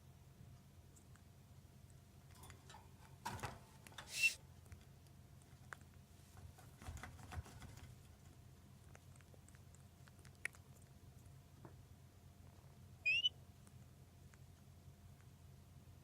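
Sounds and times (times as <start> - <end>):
soft rustle: 3.6 - 4.4
parrot hissing sniff: 4.1 - 4.4.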